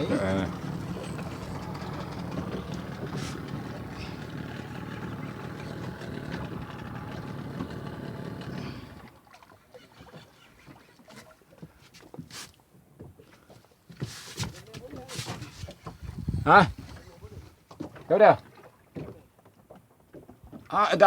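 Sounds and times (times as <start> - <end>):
boat engine running: 0.0 - 11.2.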